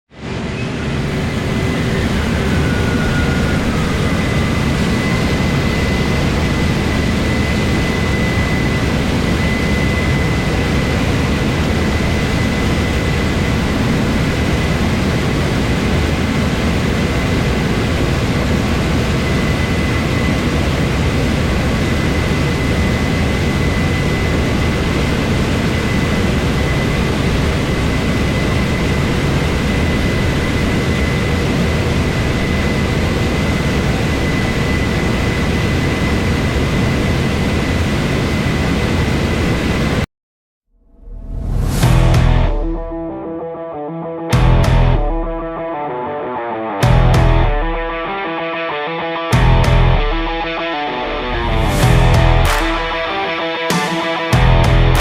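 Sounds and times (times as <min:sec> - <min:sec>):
high machine whine: 0:00.2 - 0:40.0, 0:41.0 - 0:45.9, 0:46.8 - 0:55.0
harvest machinery engine drone: 0:41.1 - 0:43.3, 0:44.4 - 0:45.7, 0:46.8 - 0:48.2, 0:49.3 - 0:55.0.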